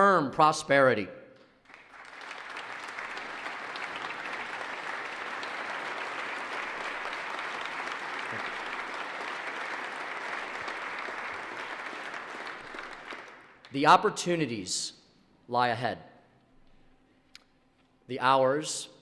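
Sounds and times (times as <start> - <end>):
audience applauding: 1.6 - 13.7.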